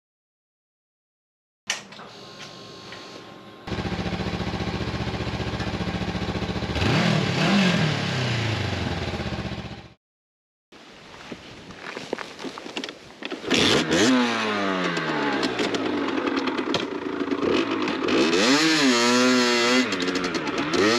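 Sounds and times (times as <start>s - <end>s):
two-stroke dirt bike engine revving: 3.7s - 10.0s, 13.4s - 20.9s.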